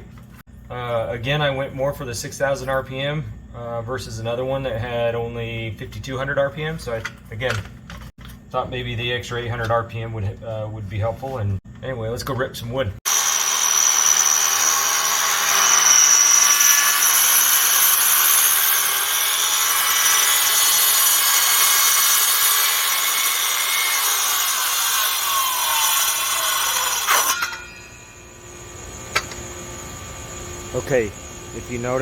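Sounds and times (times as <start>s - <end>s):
saw blade spinning down: 13.1s - 29.1s
circular saw cutting wood: 13.1s - 29.4s.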